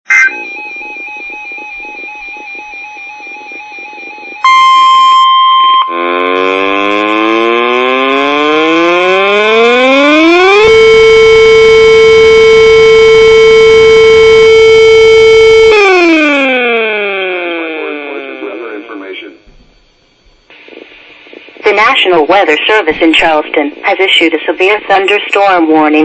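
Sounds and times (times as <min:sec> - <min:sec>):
siren wailing: 0:00.1 - 0:20.0
buzzy warbling electronic signal: 0:00.1 - 0:25.6.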